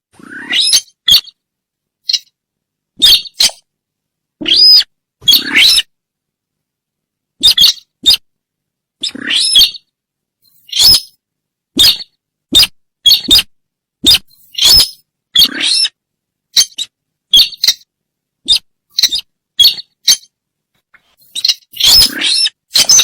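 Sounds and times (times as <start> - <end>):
recorded bird calls sweeping up: 21.2 - 23.0.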